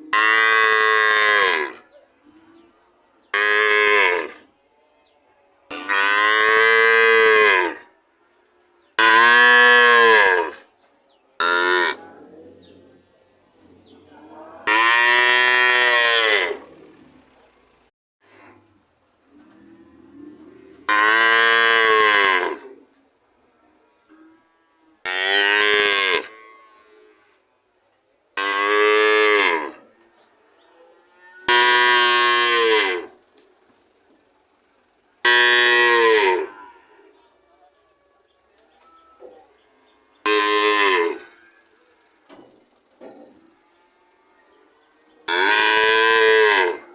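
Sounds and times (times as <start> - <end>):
cow mooing: 0.0 - 2.7, 3.3 - 4.5, 5.7 - 8.0, 8.8 - 10.7, 11.4 - 13.0, 14.1 - 17.1, 19.3 - 22.8, 24.2 - 27.4, 28.4 - 30.0, 30.6 - 33.2, 35.2 - 37.2, 39.1 - 41.7, 43.6 - 46.9.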